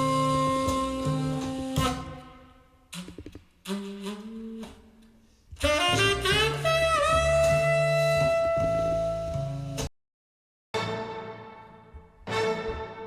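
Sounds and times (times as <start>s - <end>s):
jazz saxophone over loudspeakers: 0.0s - 9.8s.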